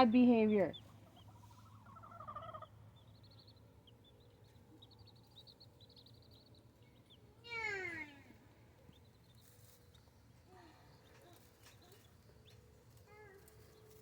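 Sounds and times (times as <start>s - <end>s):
baby chicks peeping: 0.0s - 14.0s
lower poultry call: 1.4s - 2.7s.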